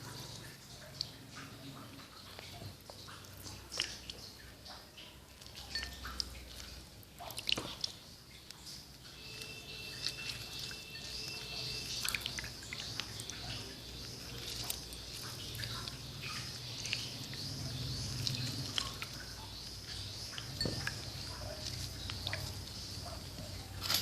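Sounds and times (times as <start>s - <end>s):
insect chirring: 9.2s - 24.0s.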